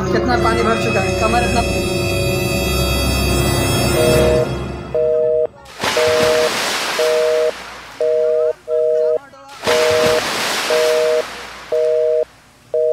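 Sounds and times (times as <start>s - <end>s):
telephone busy signal beeps: 4.0s - 12.9s
hissing noise: 5.7s - 8.8s, 9.5s - 12.5s.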